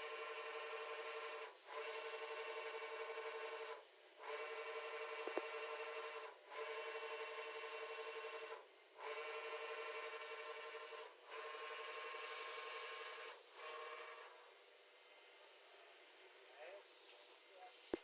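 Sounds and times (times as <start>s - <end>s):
milling machine cutter whine: 0.0s - 14.4s
hiss: 11.3s - 18.0s.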